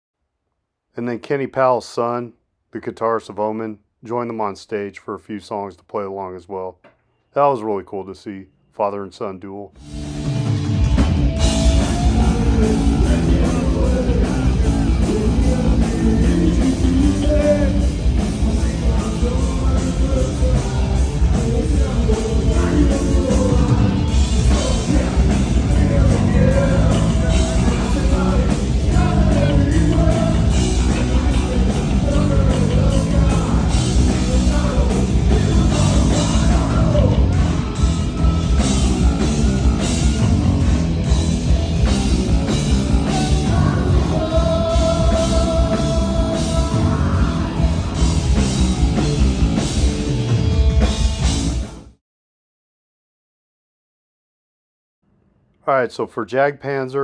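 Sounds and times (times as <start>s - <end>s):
heavy metal band playing live: 9.8s - 51.9s
singer's voice wavering: 11.5s - 40.5s, 42.2s - 48.1s.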